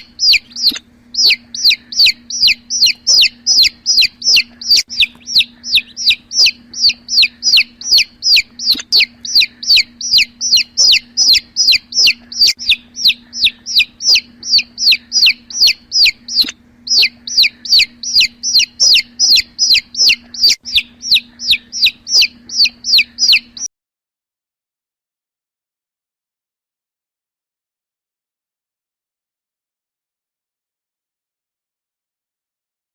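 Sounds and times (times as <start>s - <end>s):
chicks peeping: 0.0s - 23.7s.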